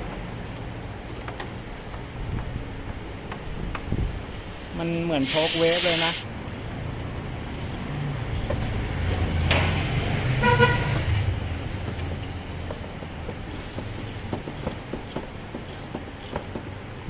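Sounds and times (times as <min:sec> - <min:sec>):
passing motor vehicle rumble: 0:06.2 - 0:17.0.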